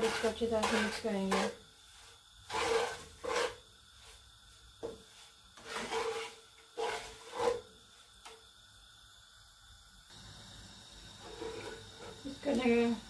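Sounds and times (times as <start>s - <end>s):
spoon scraping a pan: 0.0s - 4.2s, 4.8s - 7.8s, 11.1s - 12.9s.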